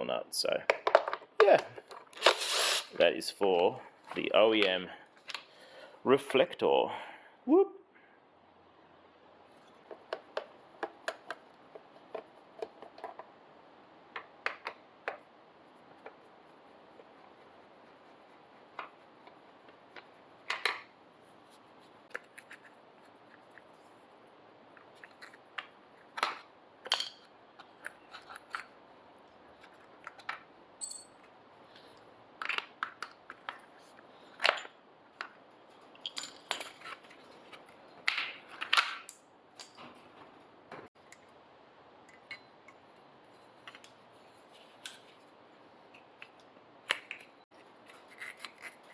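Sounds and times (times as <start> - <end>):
tools and metal parts clinking: 30.8 - 31.3, 34.4 - 34.8, 35.8 - 37.3, 38.4 - 40.9.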